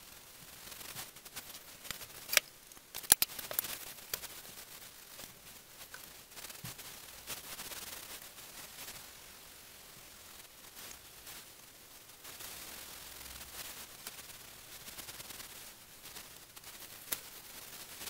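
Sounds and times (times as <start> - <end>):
sharp clicks and taps: 1.9 - 4.2.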